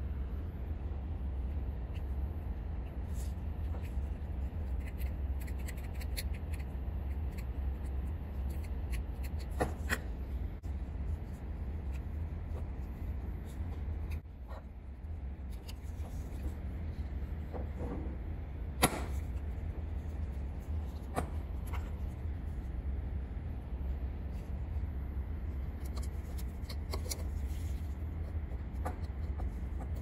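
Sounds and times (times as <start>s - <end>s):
steady low hum: 0.0s - 30.0s
small clicks and rubbing of parts: 1.5s - 10.1s, 15.4s - 17.8s, 25.6s - 30.0s.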